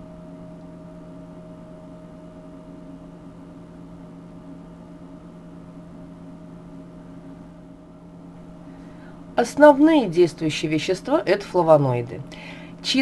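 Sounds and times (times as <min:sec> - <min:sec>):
steady hum with tones: 0:00.0 - 0:13.0.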